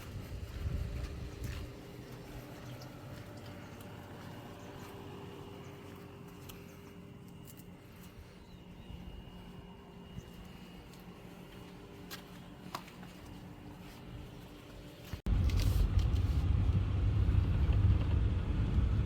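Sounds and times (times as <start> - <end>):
low machine hum: 0.0 - 19.0.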